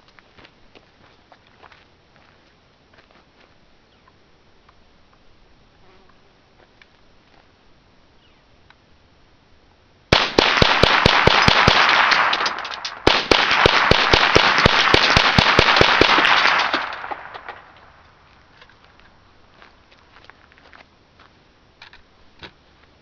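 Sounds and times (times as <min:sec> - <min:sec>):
rifle rapid fire cracks: 0:10.1 - 0:18.0
gunshot echo: 0:10.2 - 0:18.1.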